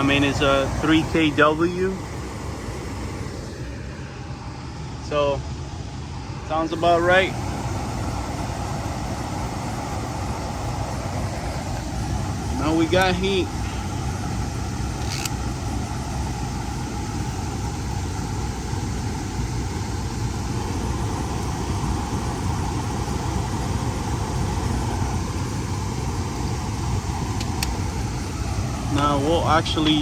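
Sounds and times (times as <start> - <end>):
blower running steadily: 0.0 - 30.0.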